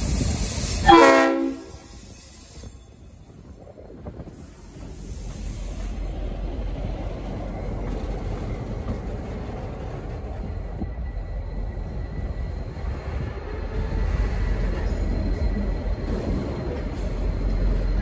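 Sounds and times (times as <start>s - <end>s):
diesel locomotive engine rumble: 0.0s - 18.0s
faint high squeal: 1.8s - 3.6s, 10.4s - 18.0s.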